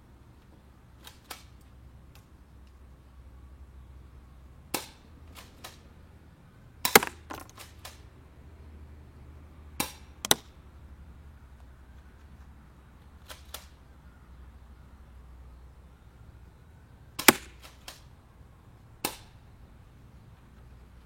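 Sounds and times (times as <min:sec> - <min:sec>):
airsoft shotgun pumped and fired: 0:06.8 - 0:08.0, 0:17.2 - 0:18.0.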